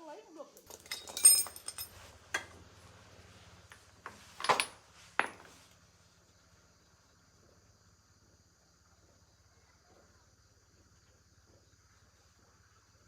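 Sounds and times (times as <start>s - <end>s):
metallic clatter: 0.6s - 2.6s.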